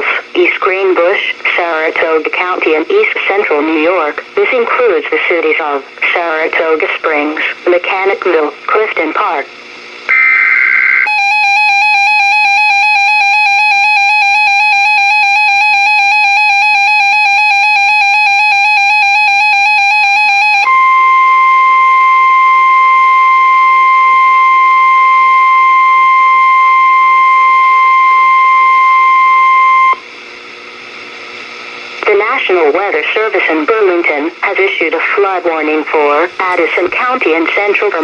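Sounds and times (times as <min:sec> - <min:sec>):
steady high alarm tone: 0:10.1 - 0:30.0.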